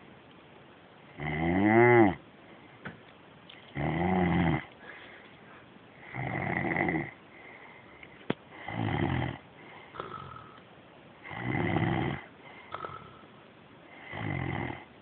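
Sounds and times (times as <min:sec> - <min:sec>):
man snoring: 0:01.2 - 0:02.2, 0:03.8 - 0:04.7, 0:06.0 - 0:07.2, 0:08.6 - 0:10.6, 0:11.2 - 0:13.2, 0:14.0 - 0:14.9.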